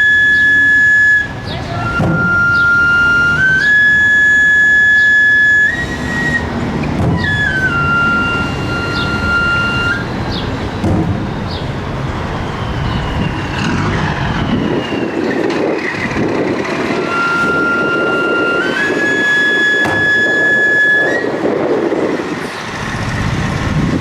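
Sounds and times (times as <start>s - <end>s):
shawm playing long nasal notes: 0.0s - 10.7s, 16.8s - 21.4s.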